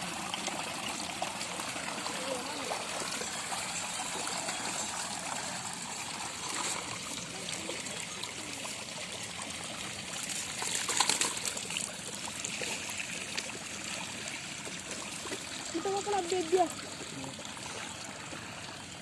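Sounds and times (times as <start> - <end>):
shallow water trickling: 0.0 - 19.0
water splashing: 0.0 - 19.0.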